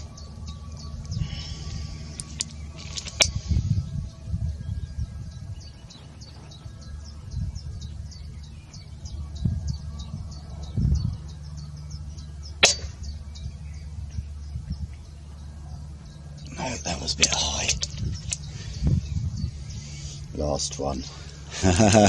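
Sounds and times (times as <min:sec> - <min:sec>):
low rumble: 0:00.0 - 0:22.0
air rifle shot: 0:12.6 - 0:13.0.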